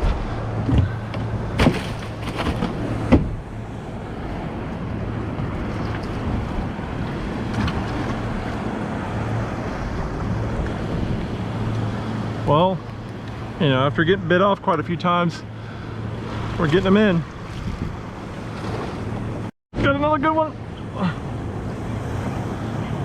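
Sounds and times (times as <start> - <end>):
water: 0.0 - 23.0
wind: 0.0 - 23.0
sharp knocks: 1.6 - 3.4.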